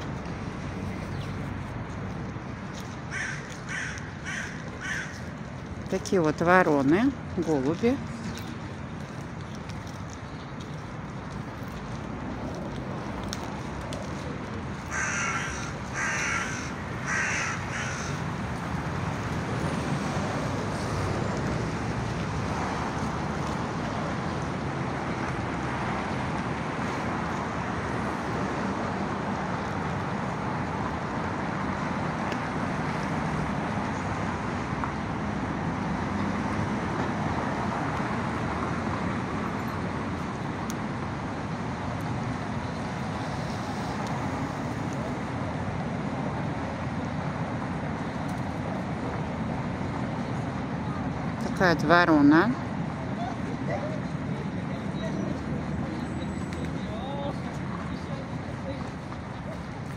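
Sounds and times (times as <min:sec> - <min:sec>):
crow cawing: 0:03.1 - 0:05.3, 0:14.8 - 0:18.3.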